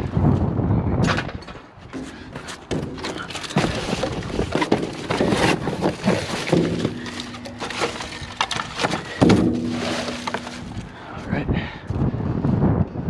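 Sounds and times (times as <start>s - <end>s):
scrap pieces clattering: 2.0s - 11.0s
rustling: 2.0s - 11.1s.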